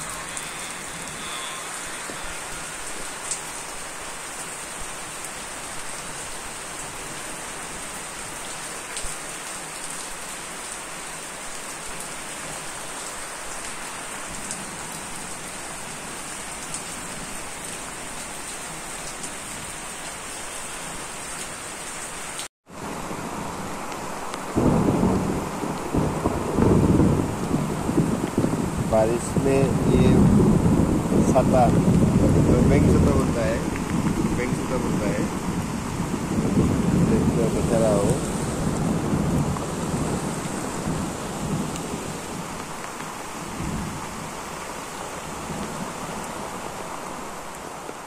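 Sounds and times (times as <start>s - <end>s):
rain falling: 0.0s - 48.0s
raindrops ticking: 31.2s - 35.6s, 40.4s - 43.2s.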